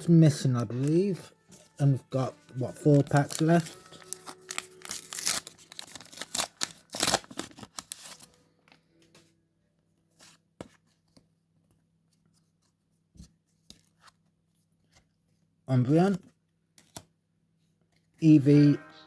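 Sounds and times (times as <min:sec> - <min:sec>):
cards clicking and rustling: 0:02.5 - 0:08.3
paper pack ripping and crinkling: 0:02.6 - 0:08.4.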